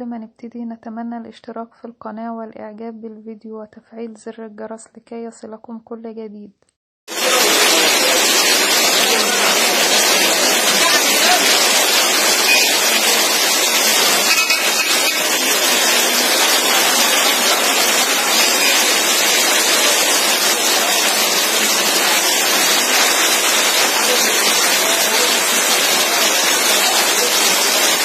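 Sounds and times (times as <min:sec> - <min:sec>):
heavy rain falling: 0:07.1 - 0:28.0.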